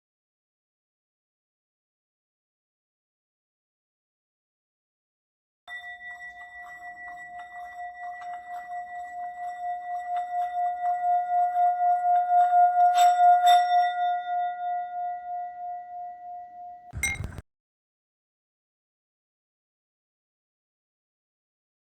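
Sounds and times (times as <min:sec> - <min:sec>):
singing bowl ringing tone: 0:05.7 - 0:17.4.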